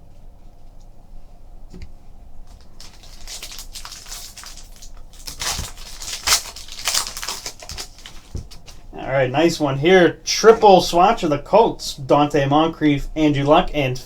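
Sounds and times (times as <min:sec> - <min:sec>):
wrapper crinkling and tearing: 0:02.5 - 0:08.9.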